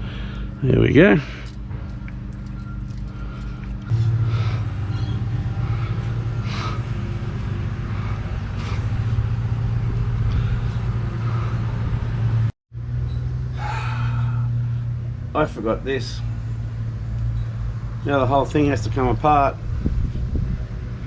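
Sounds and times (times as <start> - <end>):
low mechanical hum: 0.0 - 21.0.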